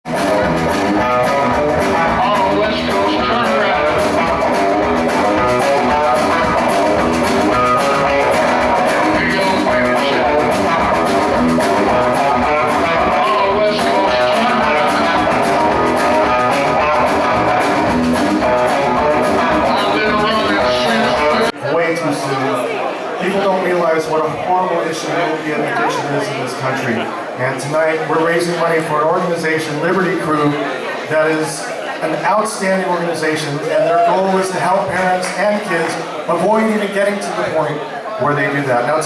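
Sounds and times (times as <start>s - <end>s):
rock music with guitars and drums: 0.1s - 21.5s.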